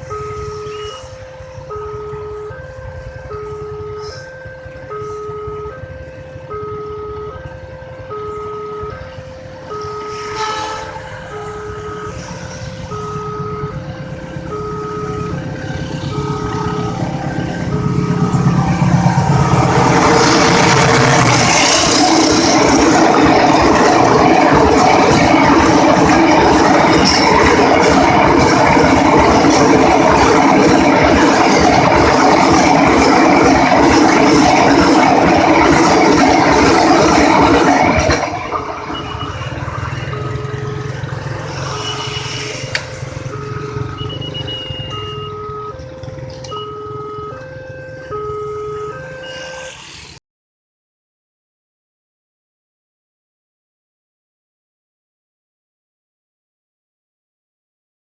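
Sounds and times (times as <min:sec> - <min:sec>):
two-tone crossing siren: 0:00.0 - 0:50.2
low rumble: 0:15.3 - 0:40.2.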